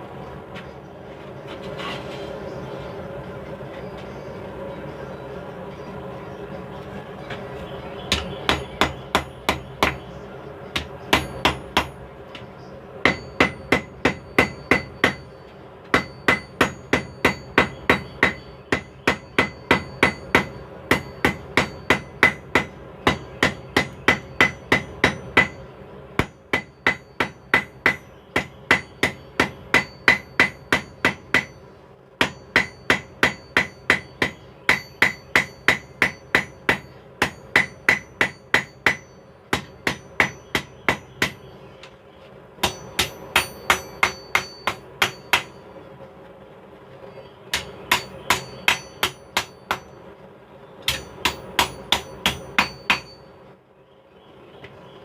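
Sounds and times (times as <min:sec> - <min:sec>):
steady low hum: 0:00.0 - 0:55.0
hammer striking steel on anvil: 0:08.1 - 0:10.0, 0:10.7 - 0:12.0, 0:13.0 - 0:41.5, 0:42.6 - 0:45.7, 0:47.5 - 0:50.0, 0:50.9 - 0:53.3.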